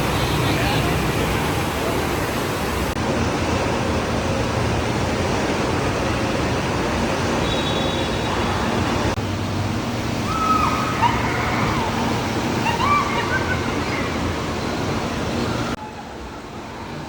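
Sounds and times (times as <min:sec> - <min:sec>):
echoing crowd noise: 0:00.0 - 0:03.4
rushing water: 0:00.0 - 0:17.0.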